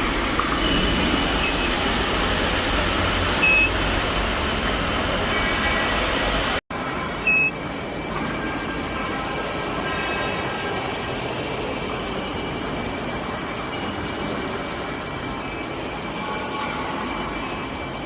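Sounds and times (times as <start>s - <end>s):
industrial machinery noise: 0.0s - 18.0s
short high-pitched beeps: 0.7s - 5.3s, 6.7s - 8.9s, 15.8s - 18.0s.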